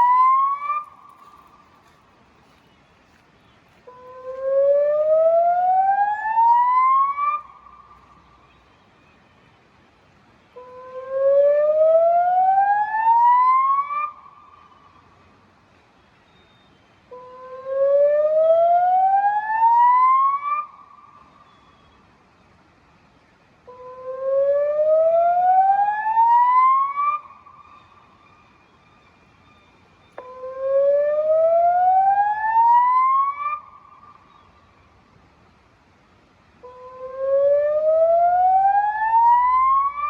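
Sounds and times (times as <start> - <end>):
rising warning siren whoops: 0.0 - 1.3, 4.0 - 7.5, 10.7 - 14.2, 17.3 - 20.8, 23.8 - 27.4, 30.2 - 33.8, 36.6 - 40.0.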